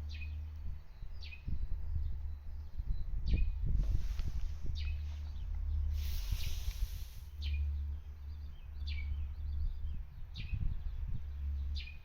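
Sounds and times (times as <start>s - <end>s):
steady low rumble: 0.0s - 12.0s
brief hiss: 5.9s - 7.4s.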